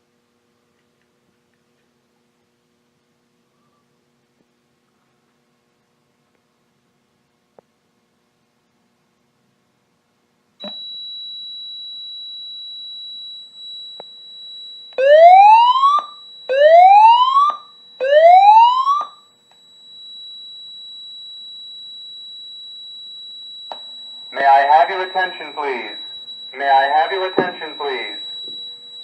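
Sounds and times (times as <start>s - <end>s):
high-pitched alarm tone: 10.6s - 29.0s
rising whoop alarm tones: 15.0s - 19.2s.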